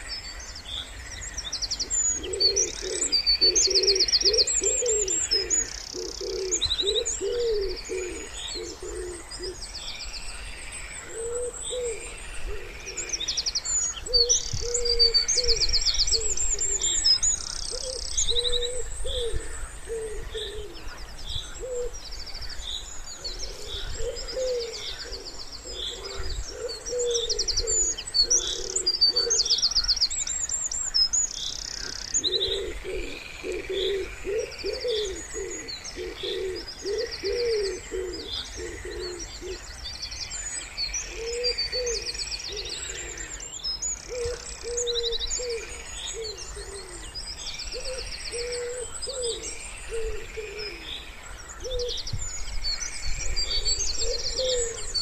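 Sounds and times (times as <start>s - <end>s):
songbirds trilling and chirping: 0.0s - 55.0s
wood pigeon cooing: 2.2s - 9.6s, 11.1s - 13.2s, 14.0s - 15.6s, 17.7s - 20.9s, 21.6s - 22.0s, 23.2s - 29.5s, 31.8s - 39.6s, 44.1s - 47.1s, 47.7s - 50.9s, 53.4s - 54.9s.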